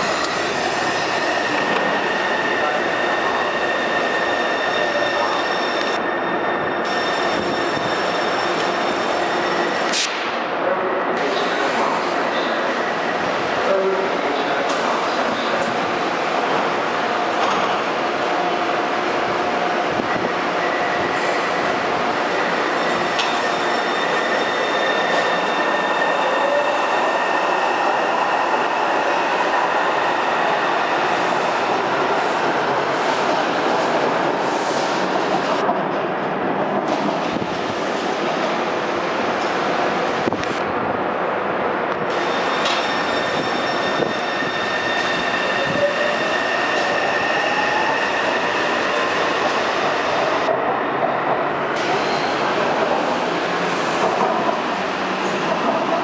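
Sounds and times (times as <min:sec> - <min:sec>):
rail running noise: 0:00.0 - 0:56.0
train wheels rumbling on rails: 0:41.8 - 0:56.0.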